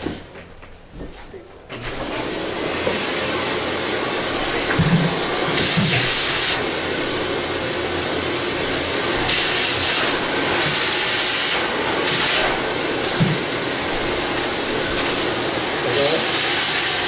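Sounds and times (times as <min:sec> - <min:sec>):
sharp hiss bursts: 0:05.4 - 0:06.8, 0:09.3 - 0:12.6.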